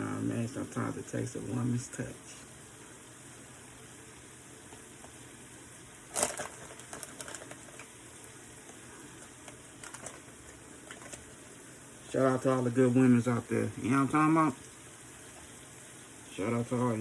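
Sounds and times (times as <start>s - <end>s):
faint background hiss: 0.0s - 17.0s
kitchen items clattering: 6.1s - 8.0s, 9.2s - 11.3s.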